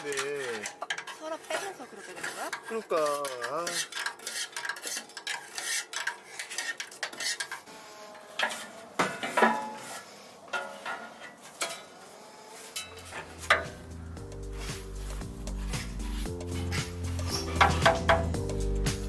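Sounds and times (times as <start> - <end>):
metal cookware clinking and scraping: 0.0 - 7.7, 8.4 - 11.9, 12.7 - 14.1, 15.6 - 18.4.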